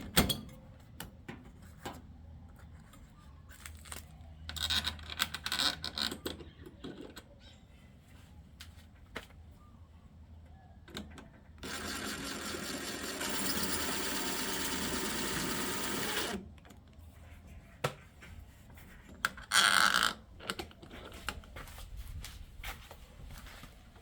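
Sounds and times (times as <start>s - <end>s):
power drill running: 11.6s - 16.4s.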